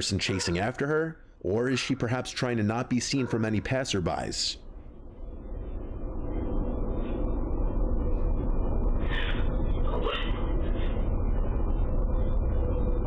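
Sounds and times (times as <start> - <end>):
low rumbling noise: 4.6 - 13.0.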